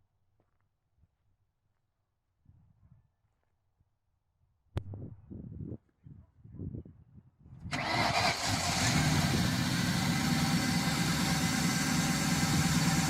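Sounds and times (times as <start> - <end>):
car engine starting and idling: 7.7 - 13.0.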